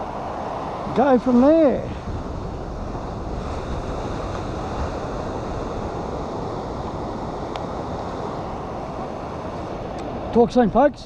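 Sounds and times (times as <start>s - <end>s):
ocean surf breaking: 0.0s - 11.0s
wind on microphone: 0.0s - 11.0s.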